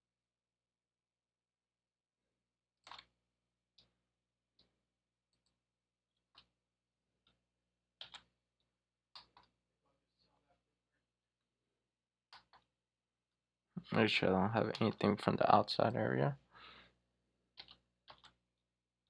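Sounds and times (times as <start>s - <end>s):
computer mouse and keyboard clicks: 2.8s - 3.1s, 8.0s - 8.3s, 12.3s - 12.7s, 17.6s - 18.4s.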